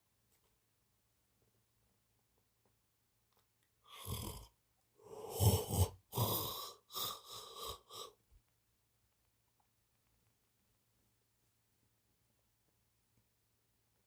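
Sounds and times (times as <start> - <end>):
cat snoring: 3.9 - 8.1.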